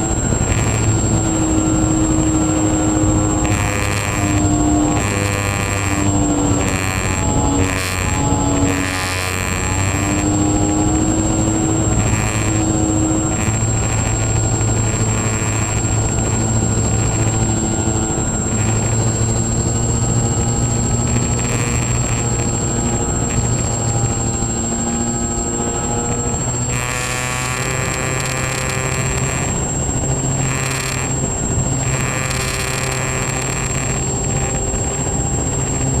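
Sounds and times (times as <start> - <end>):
model plane electric motors: 0.0 - 36.0
thin high whine: 0.0 - 36.0.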